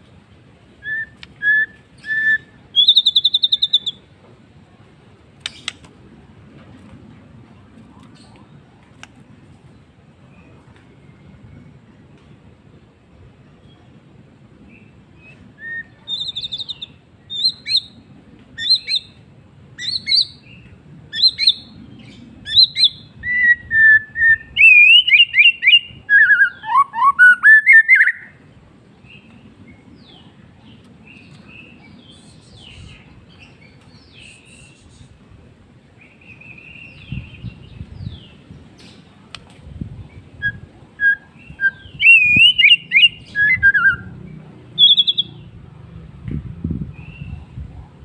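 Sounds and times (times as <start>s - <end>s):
bird singing whistled glides: 0.8s - 4.0s, 14.6s - 18.0s, 19.8s - 28.4s, 40.0s - 45.5s.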